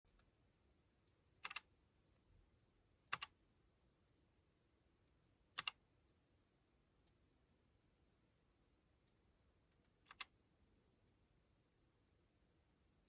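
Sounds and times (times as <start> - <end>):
keyboard keystrokes clicking: 3.1 - 3.3, 5.6 - 5.8, 10.1 - 10.3.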